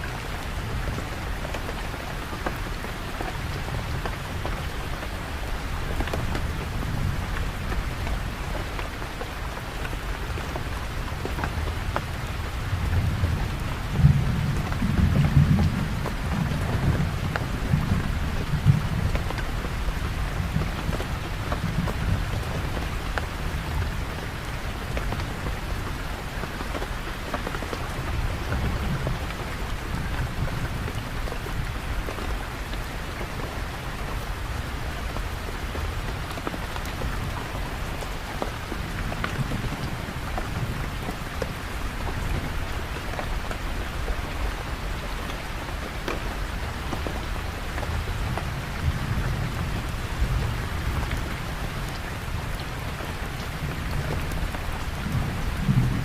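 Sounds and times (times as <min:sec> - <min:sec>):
rain pattering on surfaces: 0:00.0 - 0:56.0.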